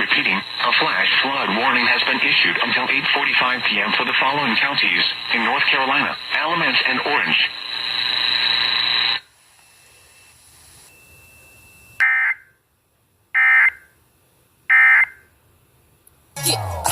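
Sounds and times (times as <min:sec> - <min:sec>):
radio broadcast audio: 0:00.0 - 0:09.2, 0:16.4 - 0:16.9.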